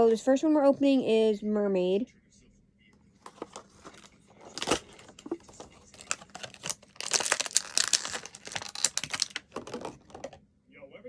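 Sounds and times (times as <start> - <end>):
toy packaging crinkling and tearing: 3.2 - 10.4.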